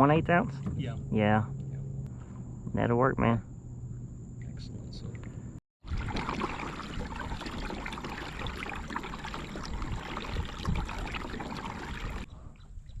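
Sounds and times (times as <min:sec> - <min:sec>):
water splashing against a hull: 0:05.8 - 0:12.3.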